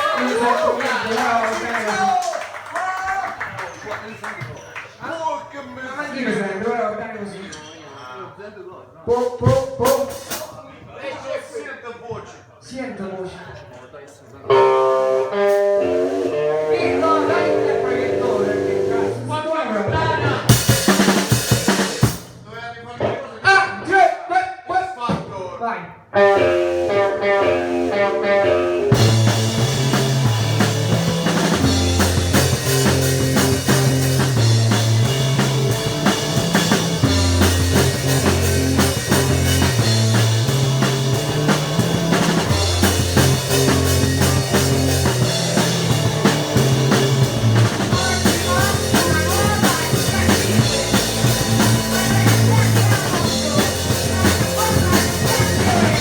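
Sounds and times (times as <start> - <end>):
drums: 0.0 - 6.4, 9.0 - 11.3, 14.5 - 24.0, 25.0 - 25.5, 26.1 - 56.0
electric guitar: 14.5 - 19.2, 26.1 - 56.0
bass guitar line: 14.5 - 19.3, 26.2 - 56.0.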